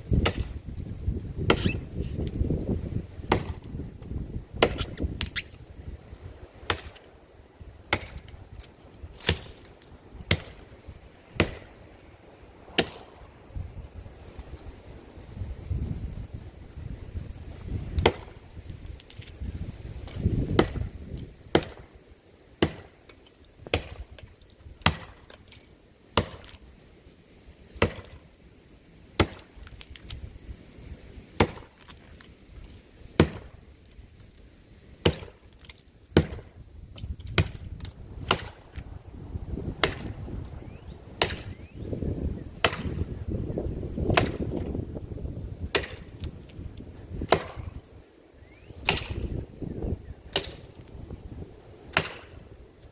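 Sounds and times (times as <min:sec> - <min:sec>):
axe chopping wood: 0:00.1 - 0:00.6, 0:01.4 - 0:02.3, 0:03.2 - 0:03.8, 0:04.6 - 0:05.5, 0:06.6 - 0:07.1, 0:07.8 - 0:11.8, 0:12.7 - 0:13.2, 0:17.9 - 0:18.4, 0:20.0 - 0:22.0, 0:22.6 - 0:26.6, 0:27.8 - 0:28.2, 0:29.2 - 0:30.0, 0:31.4 - 0:32.0, 0:33.2 - 0:33.6, 0:35.0 - 0:38.8, 0:39.8 - 0:40.2, 0:41.2 - 0:41.6, 0:42.6 - 0:43.1, 0:44.0 - 0:44.8, 0:45.6 - 0:46.4, 0:47.2 - 0:47.8, 0:48.8 - 0:49.4, 0:50.3 - 0:50.8, 0:51.9 - 0:52.9.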